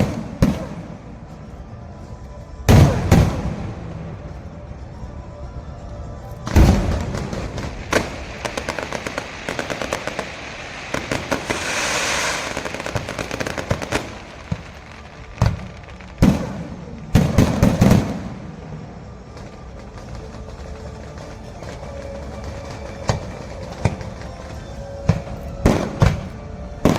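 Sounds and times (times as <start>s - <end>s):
firework bangs: 6.5s - 18.4s
firework crackling: 6.5s - 26.9s.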